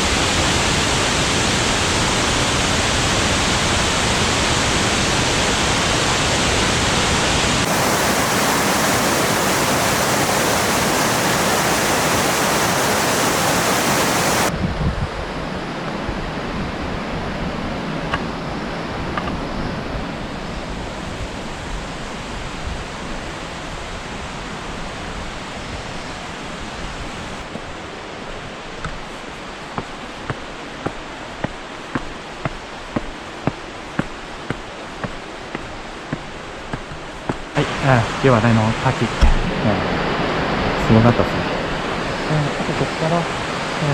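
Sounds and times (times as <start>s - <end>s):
waterfall roaring: 0.0s - 14.5s, 37.6s - 43.6s.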